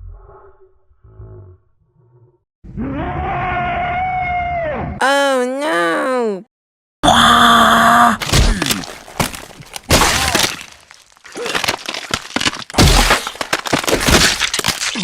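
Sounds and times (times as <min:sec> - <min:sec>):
crashing and smashing effects: 0:08.2 - 0:15.0.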